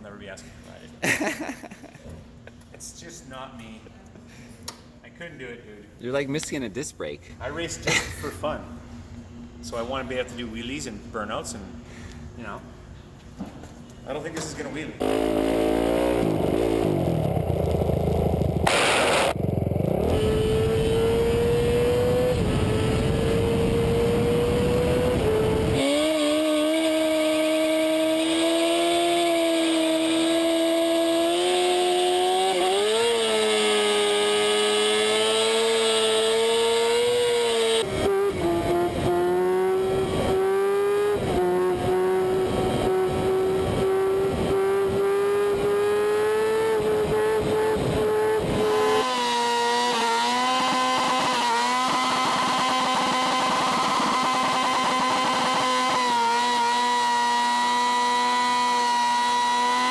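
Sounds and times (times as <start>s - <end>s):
motorcycle engine revving high: 15.0s - 59.9s.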